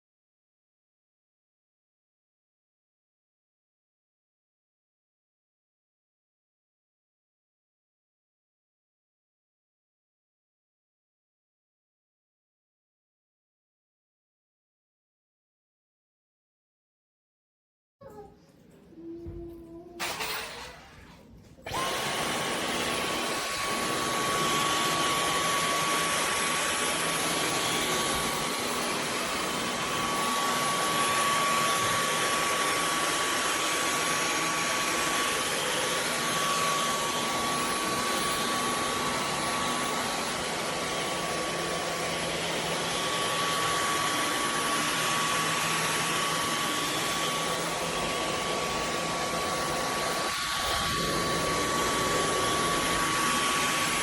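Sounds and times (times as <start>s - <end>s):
stick vacuum running: 21.6s - 54.0s.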